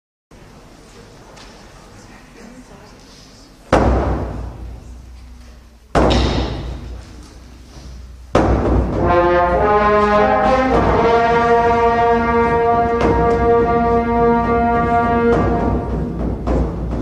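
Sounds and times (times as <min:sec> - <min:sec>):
sudden loud hit: 0:03.7 - 0:04.9, 0:06.0 - 0:07.2, 0:08.3 - 0:17.0
brass music: 0:07.7 - 0:17.0.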